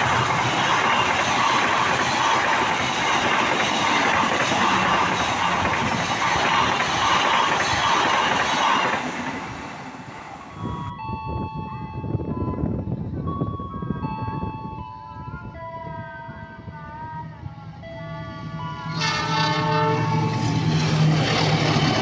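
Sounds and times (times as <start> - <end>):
train passing close by: 0.0 - 11.0, 11.8 - 22.0
music: 10.7 - 18.9.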